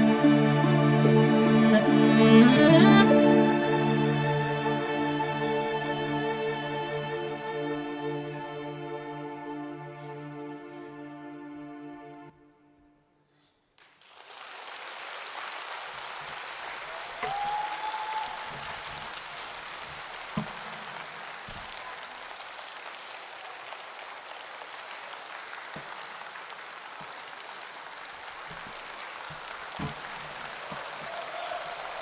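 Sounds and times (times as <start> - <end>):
audience applause: 13.8 - 32.0
rising cheer: 16.3 - 32.0.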